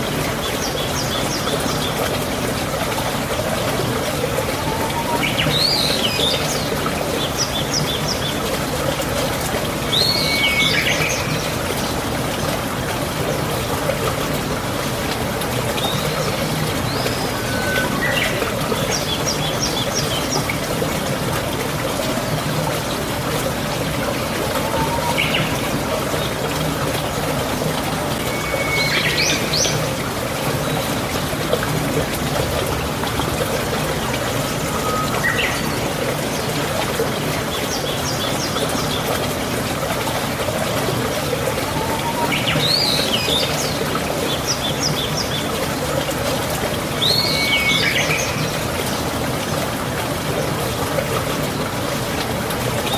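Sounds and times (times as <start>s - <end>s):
running water rushing: 0.0s - 52.9s
birds trilling: 15.8s - 20.5s, 24.0s - 26.6s, 41.1s - 45.3s.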